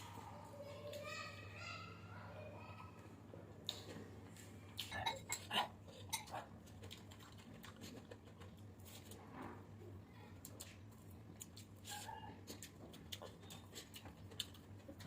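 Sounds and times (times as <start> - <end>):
eating crunches and clicks: 3.6 - 9.3, 10.3 - 15.0.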